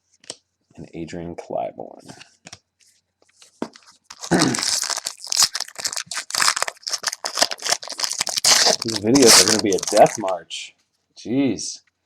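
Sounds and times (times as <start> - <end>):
foil wrapper tearing and crinkling: 3.8 - 10.3.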